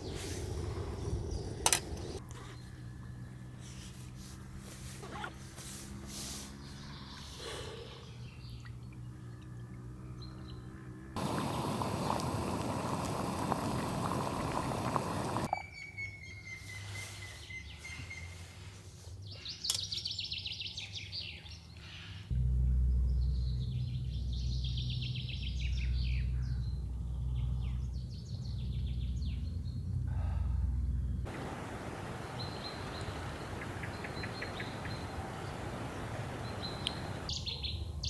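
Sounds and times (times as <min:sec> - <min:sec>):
whistled bird note: 0:31.3 - 0:37.6
high bird trill: 0:31.3 - 0:37.7
birds chirping and singing: 0:31.3 - 0:37.8.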